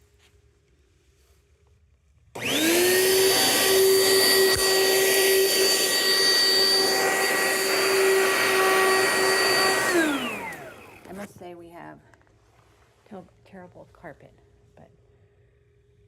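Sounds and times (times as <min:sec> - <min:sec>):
vacuum cleaner motor whine: 0:02.4 - 0:11.4.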